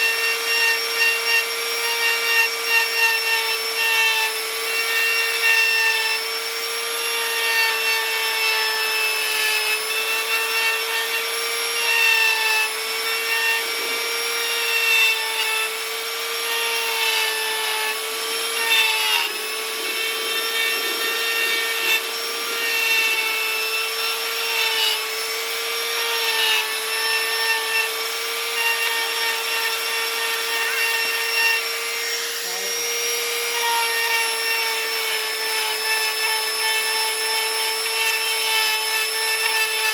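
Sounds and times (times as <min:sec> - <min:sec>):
bit grinding into wood: 0:00.0 - 0:39.9
rotary tool whining: 0:00.0 - 0:39.9.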